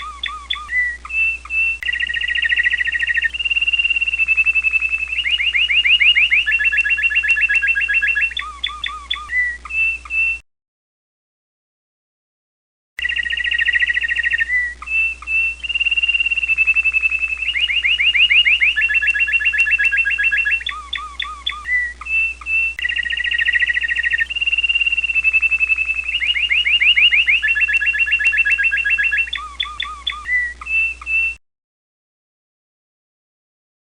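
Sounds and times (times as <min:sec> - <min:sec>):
canary singing trills: 0:00.0 - 0:10.4, 0:13.0 - 0:31.4.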